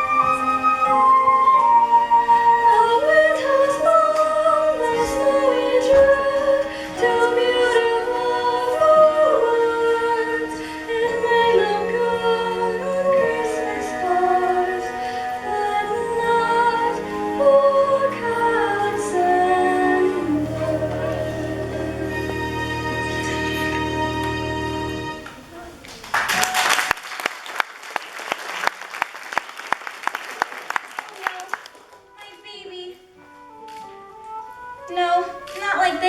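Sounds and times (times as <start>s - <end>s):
musical accompaniment: 0.0s - 25.5s, 30.7s - 36.0s
women singing a show tune: 2.5s - 23.9s, 34.8s - 36.0s.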